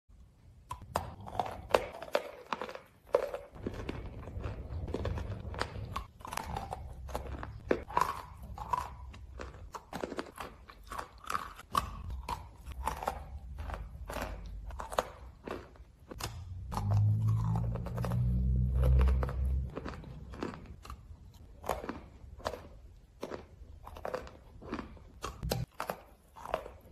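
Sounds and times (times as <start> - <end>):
crunching and chewing chalk: 0.2 - 26.9
low rumble: 3.6 - 7.8, 16.3 - 20.8.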